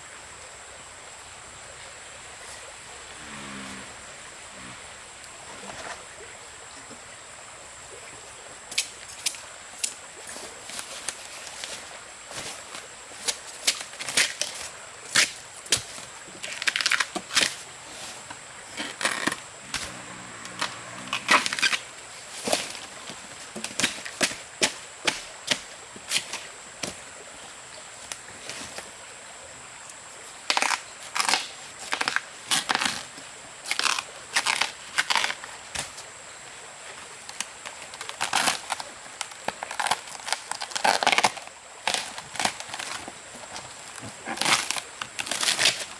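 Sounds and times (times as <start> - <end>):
sharp cracks and crackles: 37.3 - 43.0.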